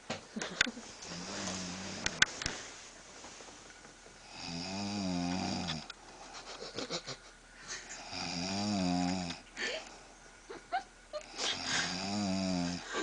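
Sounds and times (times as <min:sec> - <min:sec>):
woman snoring: 0:01.0 - 0:02.2, 0:04.2 - 0:05.9, 0:08.0 - 0:09.9, 0:11.2 - 0:13.0.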